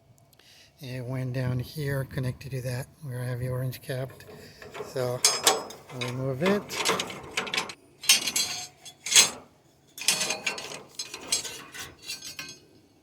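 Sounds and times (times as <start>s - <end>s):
metallic scrapes and clanks: 4.1s - 12.8s.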